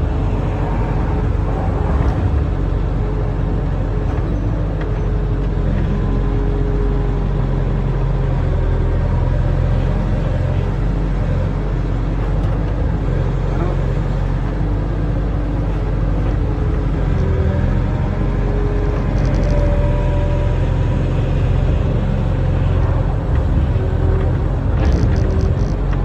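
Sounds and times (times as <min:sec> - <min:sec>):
diesel engine running: 0:00.0 - 0:26.0.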